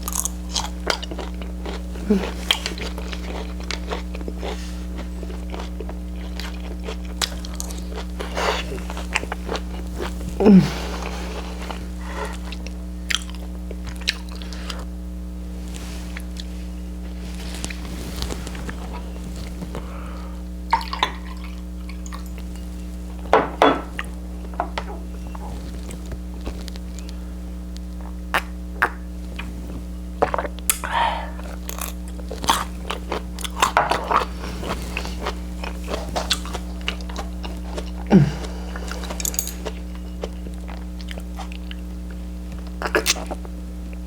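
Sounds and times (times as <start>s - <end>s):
crunchy bites and chewing: 0.0s - 14.9s, 24.0s - 27.2s, 27.8s - 44.0s
low electrical hum: 0.0s - 44.0s
person murmuring mm: 2.0s - 2.4s, 10.3s - 12.6s, 30.7s - 31.6s, 38.0s - 38.9s
utensils clinking against dishes: 38.9s - 39.8s.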